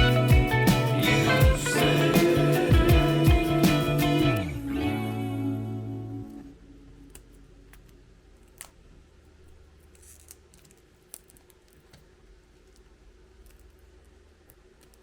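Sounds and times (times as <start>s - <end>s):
guitar music track: 0.0s - 6.5s
small objects clicking and scraping: 9.5s - 15.0s.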